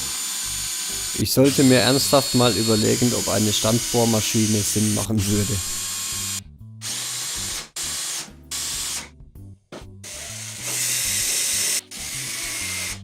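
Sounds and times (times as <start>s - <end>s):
electric drill boring through steel: 0.0s - 9.1s, 10.0s - 13.0s
background music bass line: 8.4s - 10.1s.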